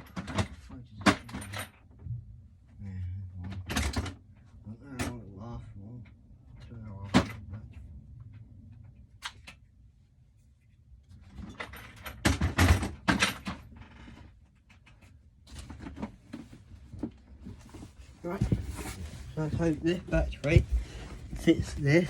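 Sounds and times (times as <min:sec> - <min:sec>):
hard objects knocking and rattling: 0:14.6 - 0:22.0.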